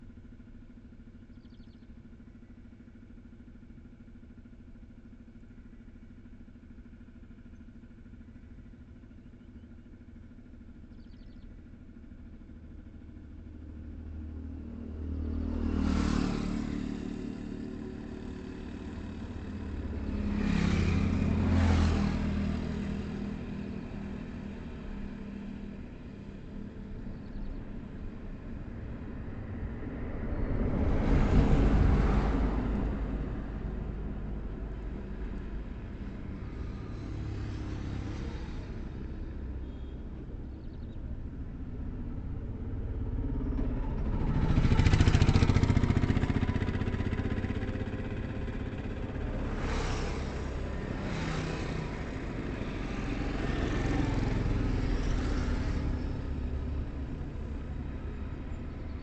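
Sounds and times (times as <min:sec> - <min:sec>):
highway traffic hum: 0:00.0 - 0:59.0
vehicle passing close by: 0:14.8 - 0:25.4, 0:29.0 - 0:40.2, 0:41.6 - 0:59.0.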